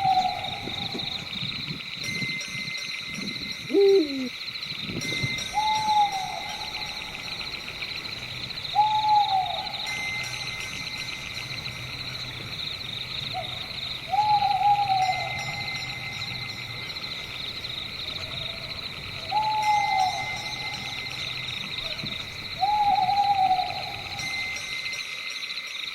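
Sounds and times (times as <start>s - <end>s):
owl hooting: 0.0s - 1.3s, 3.7s - 4.3s, 5.6s - 10.0s, 13.2s - 16.1s, 18.0s - 24.6s
crickets chirping: 0.0s - 25.9s.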